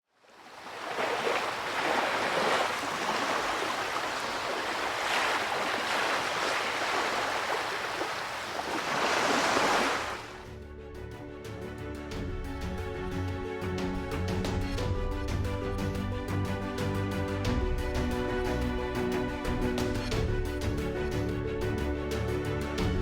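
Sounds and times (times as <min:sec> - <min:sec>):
ocean waves rushing: 0:00.1 - 0:10.5.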